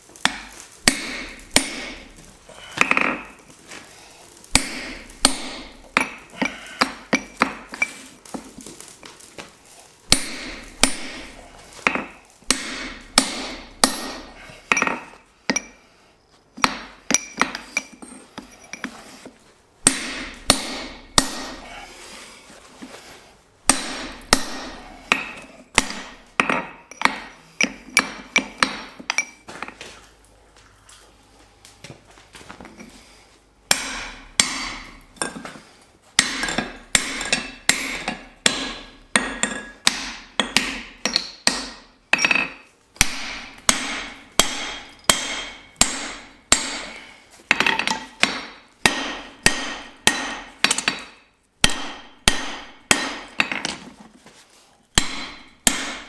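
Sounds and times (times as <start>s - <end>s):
hammer striking steel on anvil: 0.2s - 3.4s, 4.5s - 7.9s, 10.1s - 15.8s, 16.6s - 18.9s, 19.8s - 21.9s, 23.7s - 29.4s, 33.7s - 35.5s, 36.2s - 53.7s, 55.0s - 56.0s.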